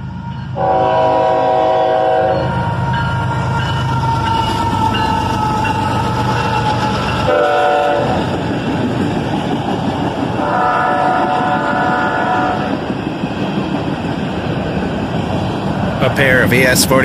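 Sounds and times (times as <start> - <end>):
freight train rumble: 0.0 - 17.0
locomotive horn blasts: 0.6 - 3.4, 7.3 - 8.3, 10.4 - 12.8.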